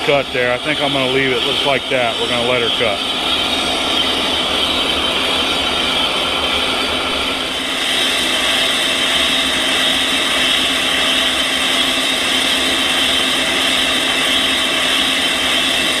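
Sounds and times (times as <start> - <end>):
hiss of lathe cutting metal: 0.0 - 16.0
metal lathe humming: 0.0 - 16.0.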